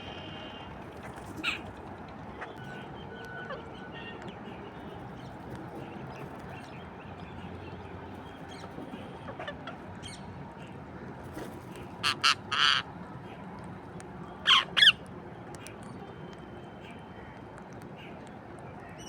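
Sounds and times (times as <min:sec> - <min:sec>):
parrot squawking: 0:12.0 - 0:12.8, 0:14.5 - 0:15.0.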